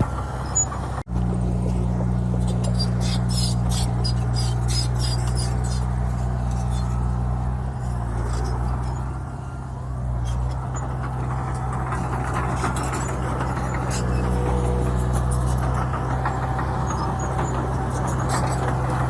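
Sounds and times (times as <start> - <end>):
heavy diesel engine running: 0.0 - 19.0.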